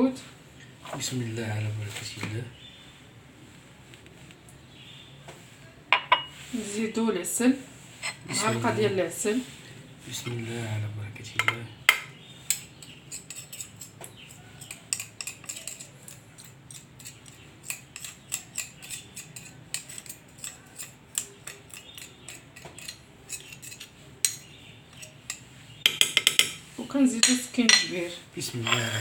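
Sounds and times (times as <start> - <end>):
metal spoon scraping container: 7.9 - 9.0, 12.4 - 29.0.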